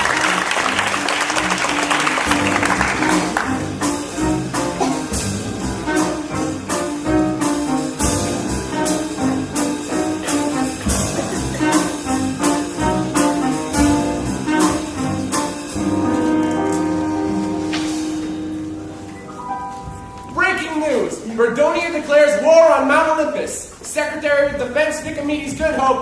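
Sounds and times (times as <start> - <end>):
applause: 0.0 - 3.6
jazzy pit band playing: 0.0 - 25.9.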